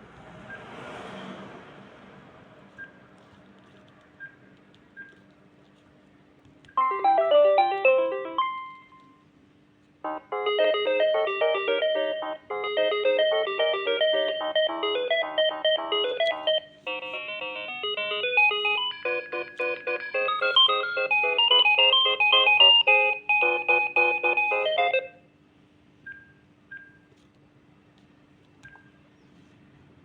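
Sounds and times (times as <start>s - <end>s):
phone ringtone melodies: 6.8s - 9.1s, 10.0s - 25.2s.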